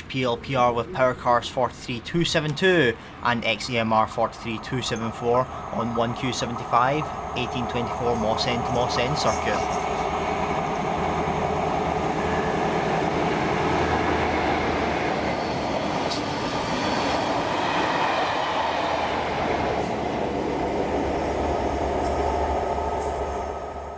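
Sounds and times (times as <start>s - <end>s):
diesel train engine: 0.0s - 23.9s
rail noise: 0.0s - 23.9s.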